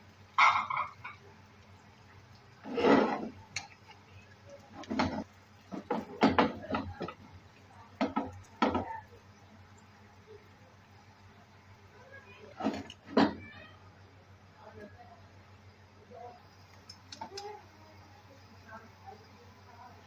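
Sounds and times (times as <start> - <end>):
utensil scraping frying pan: 2.5 - 7.3, 12.4 - 13.4.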